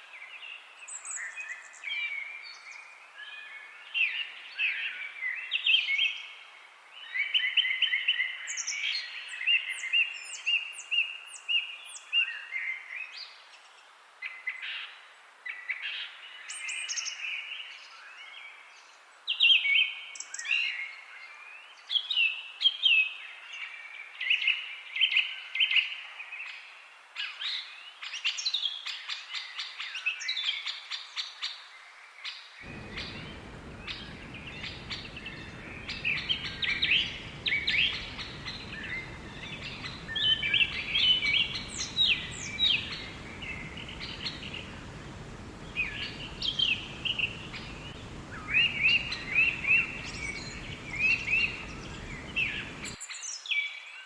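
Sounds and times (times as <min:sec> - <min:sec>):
low background rumble: 0:32.7 - 0:53.0
songbirds chirping and trilling: 0:32.7 - 0:53.4.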